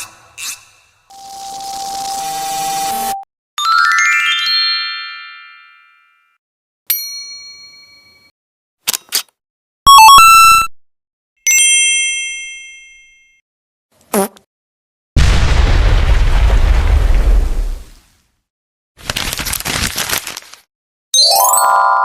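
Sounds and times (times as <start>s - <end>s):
bell-like ding: 6.9s - 8.3s, 11.6s - 13.4s
rising chime tones: 21.2s - 22.0s.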